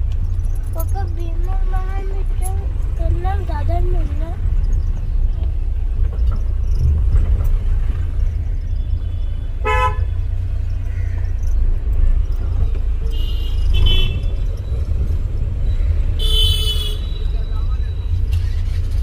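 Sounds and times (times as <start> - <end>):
car driving low rumble: 0.0 - 19.0
vehicle horns honking: 9.0 - 10.2, 13.0 - 14.4, 16.2 - 17.9.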